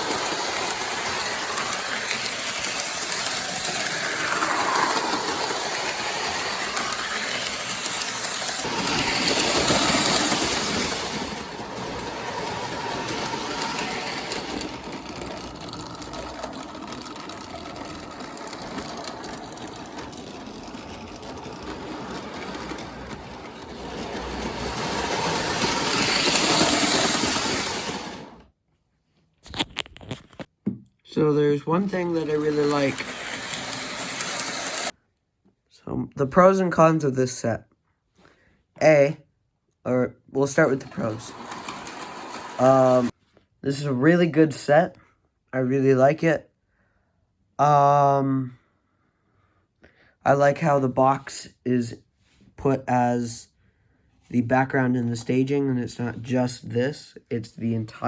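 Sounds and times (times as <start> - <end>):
toy train motor humming: 0.0 - 28.4, 31.8 - 34.9, 40.4 - 43.1
wheels clattering on rails: 0.0 - 28.4, 31.8 - 34.9, 40.4 - 43.1.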